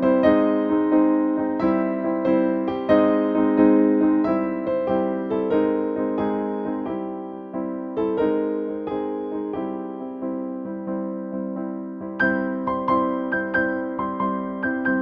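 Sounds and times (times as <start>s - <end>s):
gentle electric piano melody: 0.0s - 15.0s.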